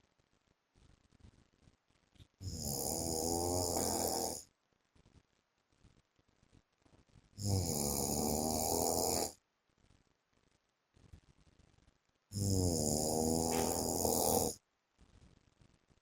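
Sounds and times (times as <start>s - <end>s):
man snoring: 2.4s - 4.4s, 7.4s - 9.4s, 12.3s - 14.6s
quiet breathing: 12.3s - 14.6s.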